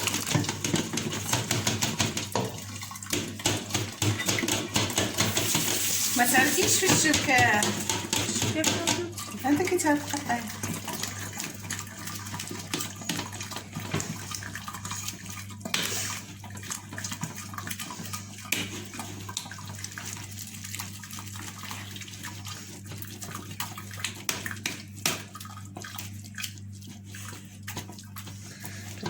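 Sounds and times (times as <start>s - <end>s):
juice splashing and trickling: 0.0s - 29.0s.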